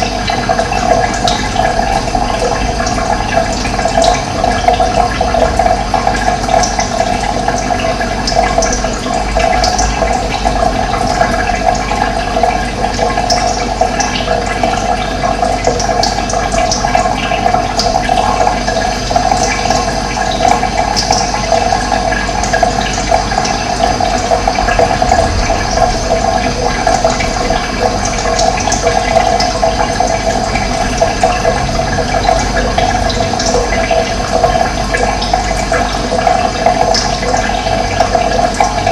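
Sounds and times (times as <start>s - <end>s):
running water rushing: 0.0s - 38.9s.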